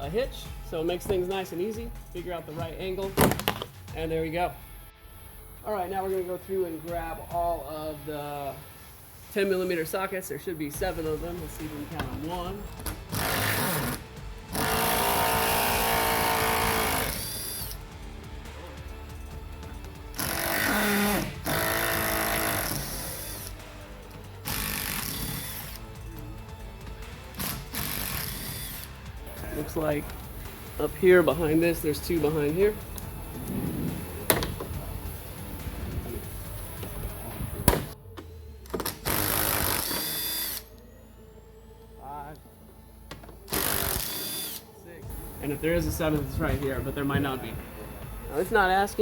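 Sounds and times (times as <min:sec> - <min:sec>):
power tool backing out bolts: 0:06.0 - 0:18.2, 0:19.1 - 0:26.0, 0:26.8 - 0:40.9, 0:42.4 - 0:48.8.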